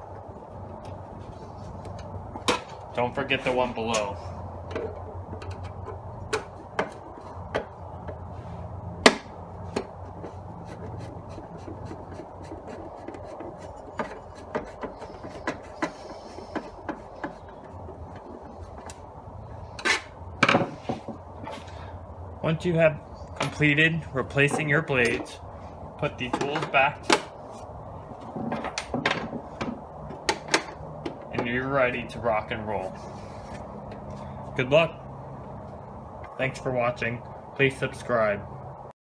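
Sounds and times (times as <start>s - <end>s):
steady low hum: 0.0s - 38.9s
tool parts clicking and knocking: 9.0s - 19.0s, 28.2s - 31.6s.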